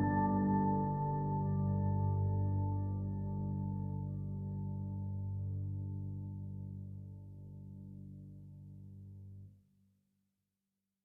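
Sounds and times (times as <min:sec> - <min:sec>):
soft ambient music: 0:00.0 - 0:09.4.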